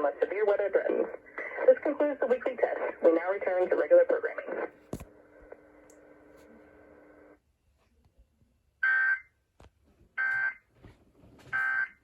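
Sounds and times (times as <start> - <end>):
radio background noise: 0.0 - 5.7.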